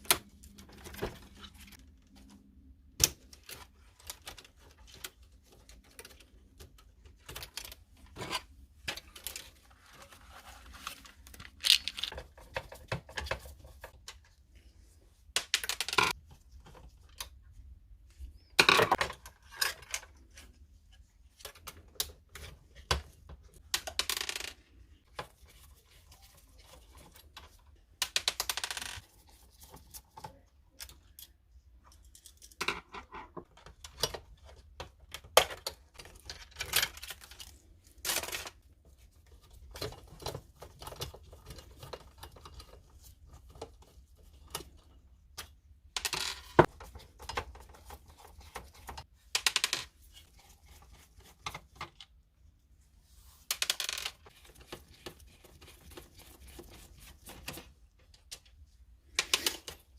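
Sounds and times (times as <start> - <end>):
printer parts clicking and clattering: 11.3 - 14.2.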